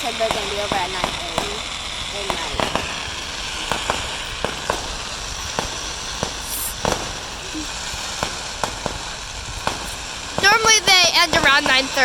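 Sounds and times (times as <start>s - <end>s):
background hiss: 0.0s - 12.0s
fireworks popping and banging: 0.0s - 12.0s.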